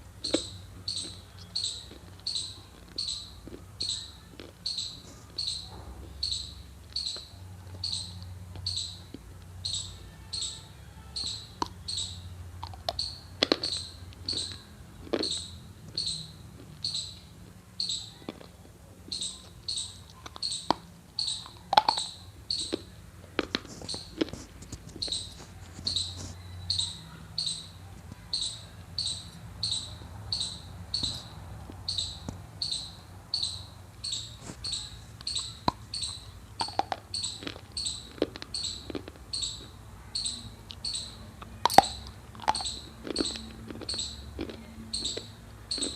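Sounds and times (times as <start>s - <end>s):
high repeating chirp: 0.2s - 18.2s, 19.1s - 23.0s, 25.0s - 45.9s
dry clay crunched by biting: 41.4s - 44.6s.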